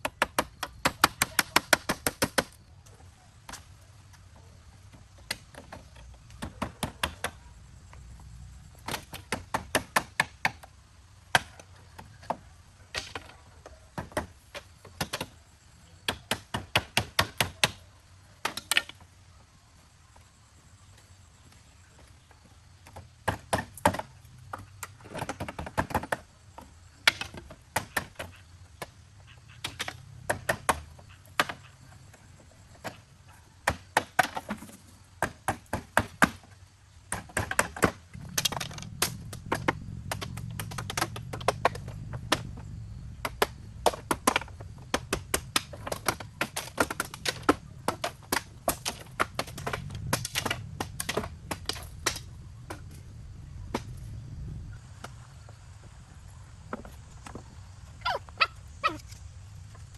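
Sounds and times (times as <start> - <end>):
steady low hum: 37.9 - 59.9.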